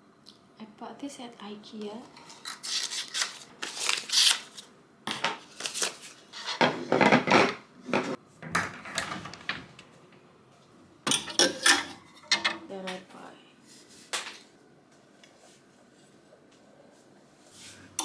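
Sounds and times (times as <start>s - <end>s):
objects clattering and rustling: 5.1s - 10.3s, 11.1s - 13.0s.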